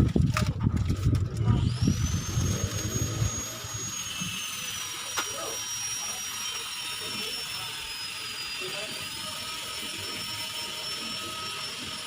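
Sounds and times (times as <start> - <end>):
low rumbling: 0.0 - 4.2
small motor whining: 0.0 - 12.0.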